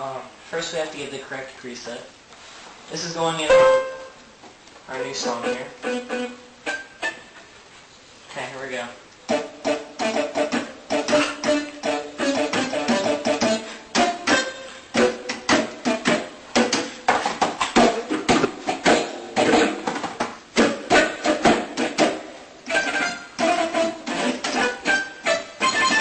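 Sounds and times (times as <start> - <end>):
electronic keyboard solo: 3.4 - 4.2, 4.9 - 7.1.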